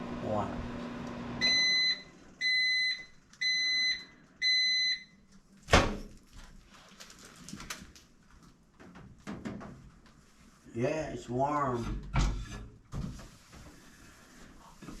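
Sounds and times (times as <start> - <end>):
microwave beeps: 1.3 - 5.2.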